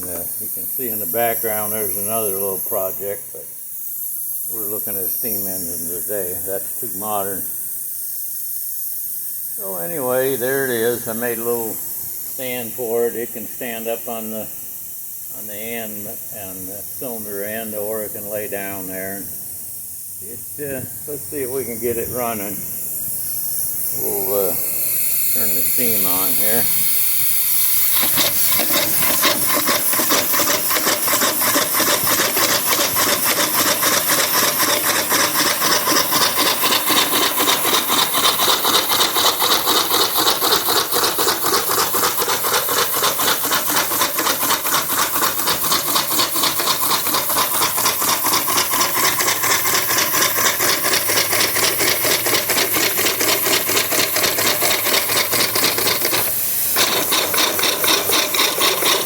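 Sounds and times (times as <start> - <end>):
steam engine chuffing and clatter: 0.0 - 3.5, 20.4 - 59.0.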